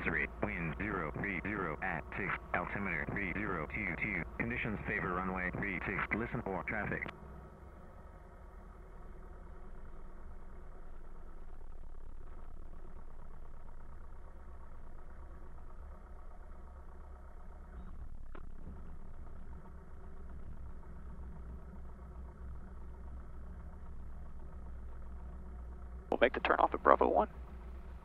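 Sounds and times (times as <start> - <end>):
airplane engine running: 0.0 - 10.2, 18.2 - 28.0.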